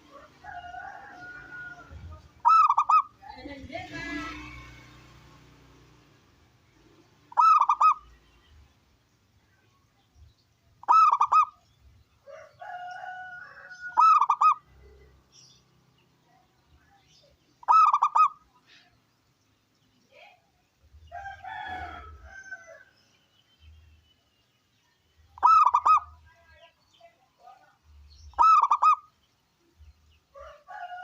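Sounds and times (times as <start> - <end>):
dove warbling coos: 0.0 - 3.2, 7.3 - 8.2, 10.8 - 11.7, 12.4 - 15.1, 17.6 - 18.5, 25.3 - 26.2, 28.3 - 29.2
faint bird calls: 0.0 - 3.2, 7.3 - 8.7, 10.7 - 12.8, 13.6 - 15.6, 16.4 - 19.1, 25.2 - 27.2, 28.2 - 29.4.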